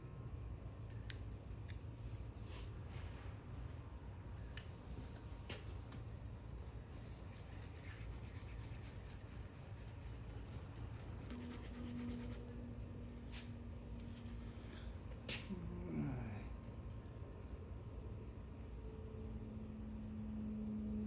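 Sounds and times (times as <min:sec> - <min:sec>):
faint steady hum: 0:00.0 - 0:21.0
stick stirring epoxy: 0:06.6 - 0:12.8.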